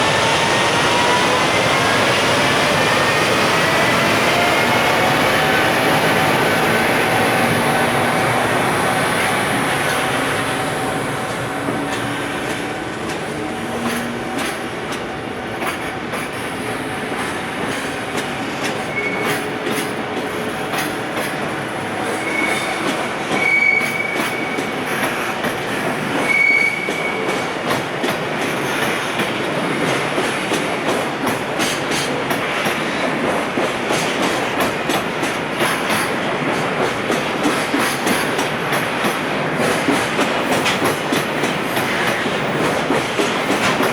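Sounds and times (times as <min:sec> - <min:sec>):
train wheels clacking over rail joints: 0:02.4 - 0:43.9
high wheel squeals: 0:22.1 - 0:24.6.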